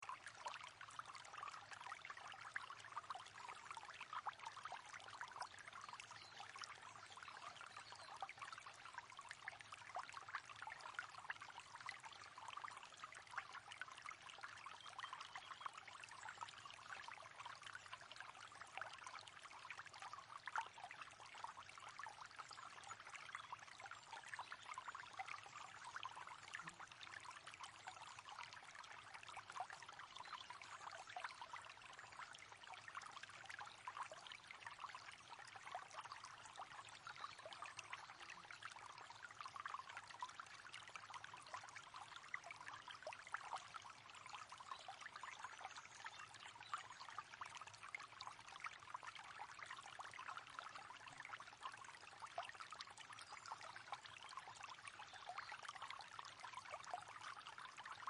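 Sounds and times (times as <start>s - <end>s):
river water flowing: 24.0s - 33.0s.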